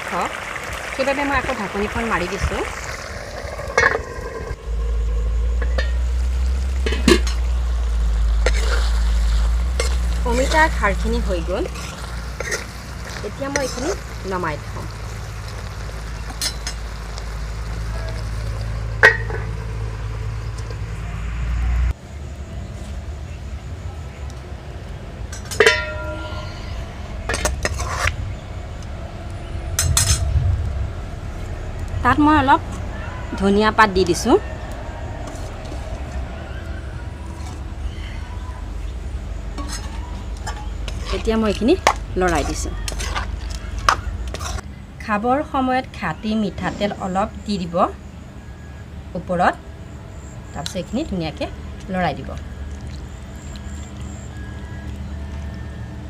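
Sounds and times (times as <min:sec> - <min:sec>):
cooking in a covered pot: 0:00.0 - 0:56.0
steady low hum: 0:03.3 - 0:15.4, 0:18.6 - 0:45.0
pot and lid clinking: 0:05.6 - 0:06.2, 0:06.8 - 0:07.5, 0:19.0 - 0:19.6, 0:25.3 - 0:26.7, 0:39.6 - 0:44.6
utensils scraping and clattering: 0:09.8 - 0:14.1, 0:25.3 - 0:28.2, 0:39.5 - 0:44.7.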